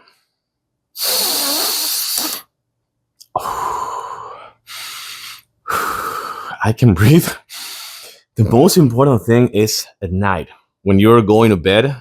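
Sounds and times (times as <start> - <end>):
person breathing through the nose: 1.0 - 2.5, 3.4 - 6.6, 7.5 - 8.3.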